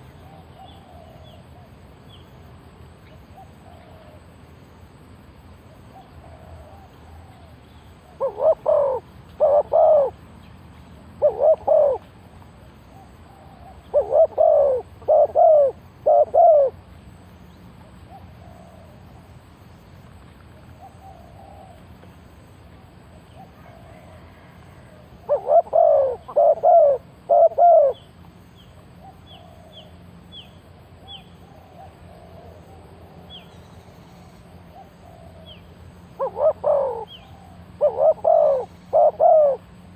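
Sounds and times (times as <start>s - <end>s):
dove cooing: 0.0s - 1.7s, 5.9s - 10.2s, 11.2s - 12.1s, 12.9s - 16.8s, 18.1s - 19.2s, 20.6s - 21.9s, 23.4s - 28.1s, 29.0s - 29.9s, 31.0s - 39.9s.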